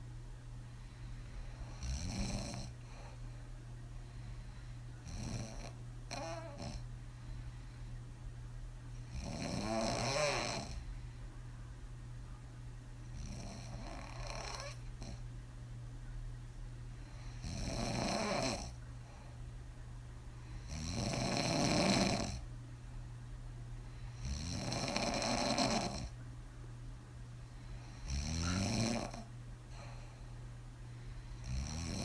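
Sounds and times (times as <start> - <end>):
steady low hum: 0.0 - 32.0
woman snoring: 1.6 - 2.8, 5.0 - 6.9, 9.0 - 10.8, 13.1 - 15.2, 17.2 - 18.8, 20.6 - 22.4, 24.1 - 26.1, 27.8 - 29.9, 31.4 - 32.0.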